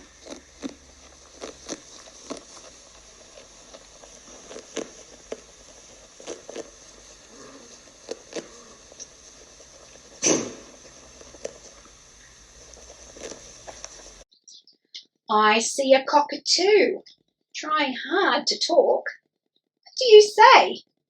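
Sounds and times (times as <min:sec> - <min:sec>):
wombat snuffles and clicks: 0:00.0 - 0:11.9
faint steady hiss: 0:00.0 - 0:14.2.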